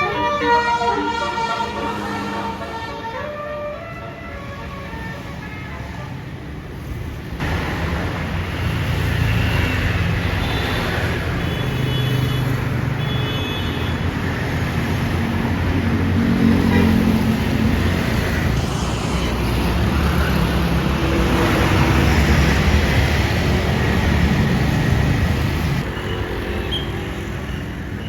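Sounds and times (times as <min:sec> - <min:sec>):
bus engine rumbling: 0:00.0 - 0:04.1, 0:14.7 - 0:25.8
multi-tone horn melody: 0:00.0 - 0:06.2
road noise: 0:00.0 - 0:28.0
street traffic: 0:00.0 - 0:28.0.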